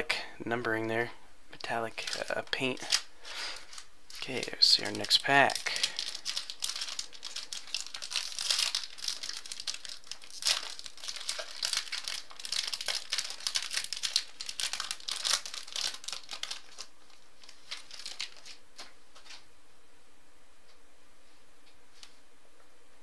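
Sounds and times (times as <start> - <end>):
wrapper tearing and crinkling: 1.6 - 18.9.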